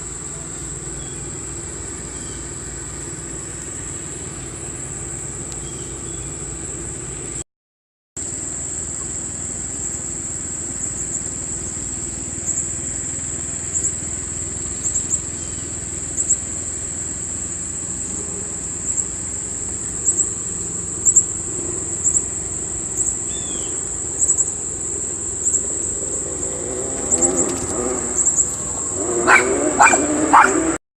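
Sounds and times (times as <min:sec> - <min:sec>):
insects trilling: 0:00.0 - 0:07.4, 0:08.2 - 0:30.8
low steady rumble: 0:00.0 - 0:07.4, 0:08.2 - 0:30.8
dog yipping and whimpering: 0:29.2 - 0:30.7.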